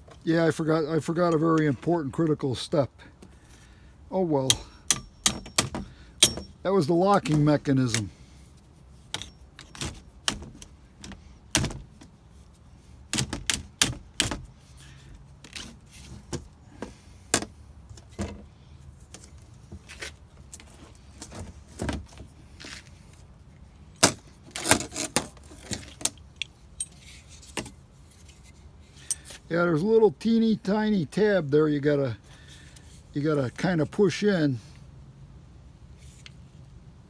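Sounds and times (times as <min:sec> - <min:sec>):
hand tools clicking and knocking: 0:04.4 - 0:08.1, 0:09.1 - 0:11.9, 0:13.1 - 0:14.5.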